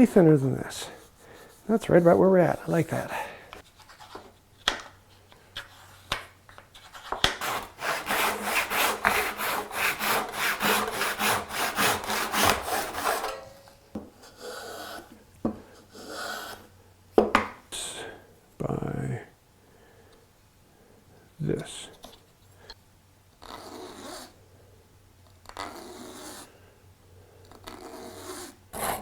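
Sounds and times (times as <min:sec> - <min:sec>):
hand saw cutting wood: 0:07.4 - 0:13.4.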